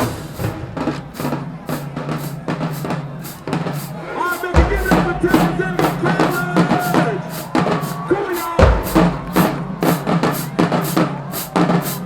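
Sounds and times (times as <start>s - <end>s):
cymbal strokes: 0.0s - 12.0s
marching drumline cadence: 0.0s - 12.0s
deep bass drum hit: 4.6s - 6.1s, 8.6s - 9.8s.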